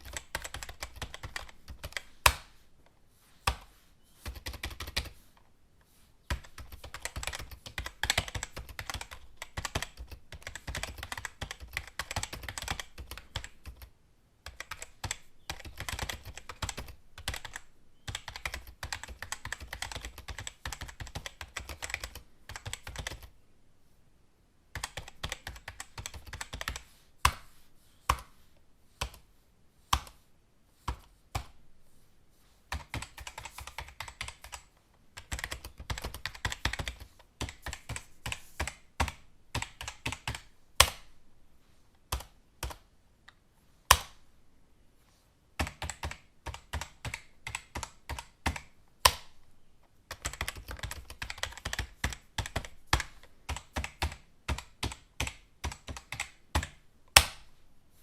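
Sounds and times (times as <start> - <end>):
computer keyboard typing: 0.0 - 2.5, 3.5 - 5.2, 6.3 - 23.3, 24.7 - 27.4, 32.7 - 41.0, 45.6 - 49.3, 50.1 - 57.5.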